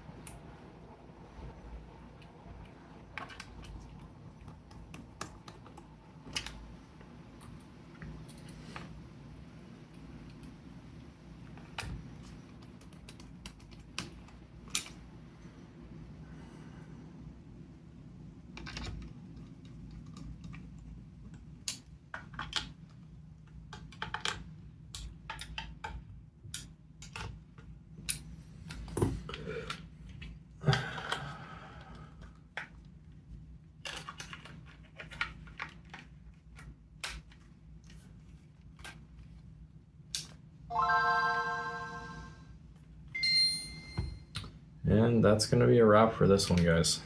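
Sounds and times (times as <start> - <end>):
console startup chime: 40.7 - 42.5, 43.2 - 44.2.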